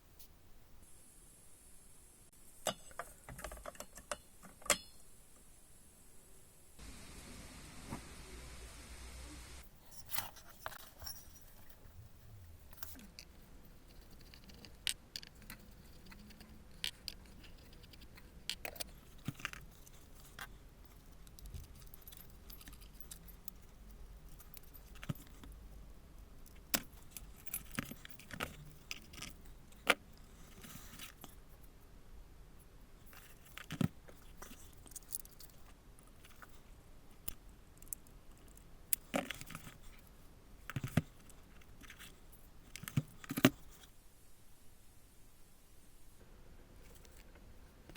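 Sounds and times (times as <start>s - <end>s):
faint steady hum: 0.0s - 47.9s
metal tools clinking: 9.8s - 12.0s.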